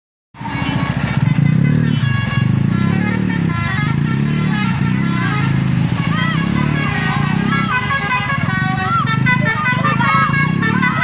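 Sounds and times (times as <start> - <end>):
vehicle engines running: 0.4 - 11.0
high tune of held notes: 2.6 - 11.0.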